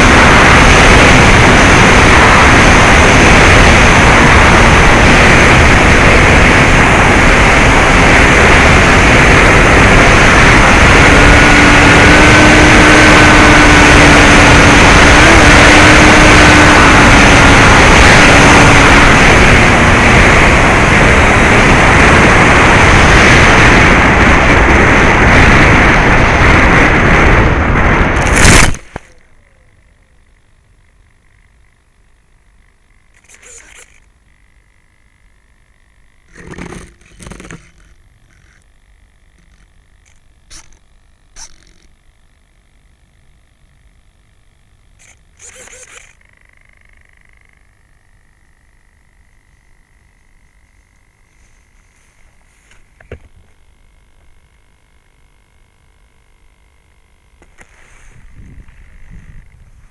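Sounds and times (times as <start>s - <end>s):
rushing wind: 0.0s - 29.6s, 50.9s - 59.9s
electric motor and propeller whine: 0.0s - 59.9s.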